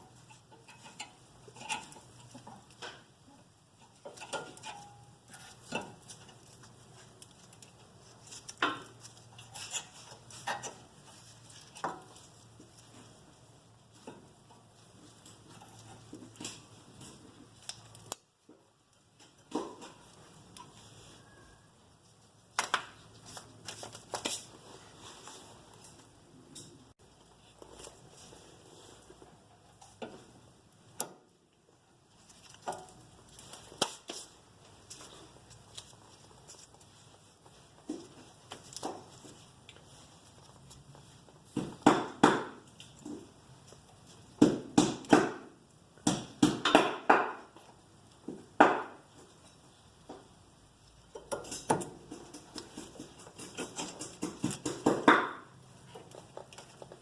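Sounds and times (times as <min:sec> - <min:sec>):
metallic clicks and scrapes: 0:00.0 - 0:13.3.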